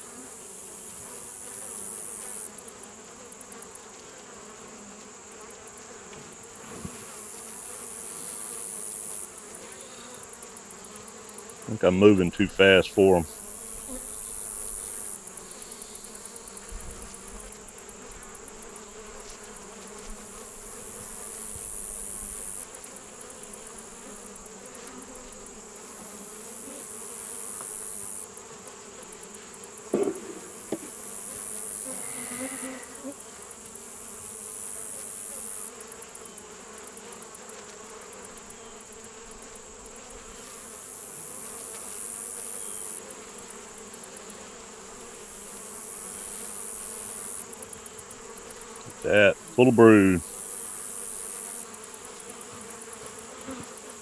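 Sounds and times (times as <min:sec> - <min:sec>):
honeybees buzzing: 0:00.0 - 0:27.4, 0:28.4 - 0:33.4
sharp knock: 0:30.0 - 0:30.9.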